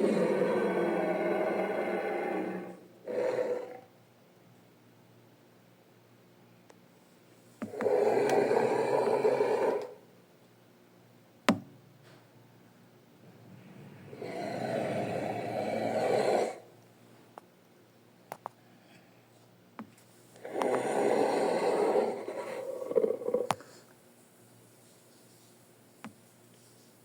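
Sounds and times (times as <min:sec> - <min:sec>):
creature rasping growls: 0:00.0 - 0:03.9, 0:07.7 - 0:10.0, 0:13.4 - 0:16.7, 0:20.4 - 0:23.6.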